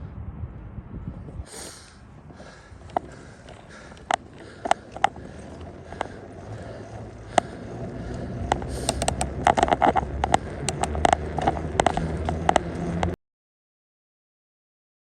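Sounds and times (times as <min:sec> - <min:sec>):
low rumble: 0:00.0 - 0:13.2
bicycle rattling: 0:01.2 - 0:13.2
sharp clicks and knocks: 0:02.4 - 0:13.2.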